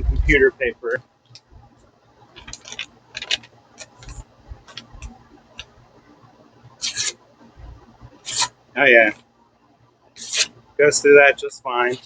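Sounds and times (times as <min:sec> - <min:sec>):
knife cutting paper: 0:06.8 - 0:07.2, 0:08.2 - 0:08.5, 0:10.2 - 0:10.6.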